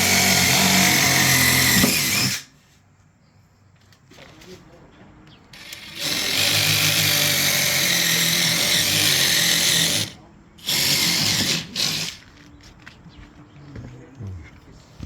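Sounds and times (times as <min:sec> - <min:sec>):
power drill running: 0:00.0 - 0:02.5, 0:05.6 - 0:12.2.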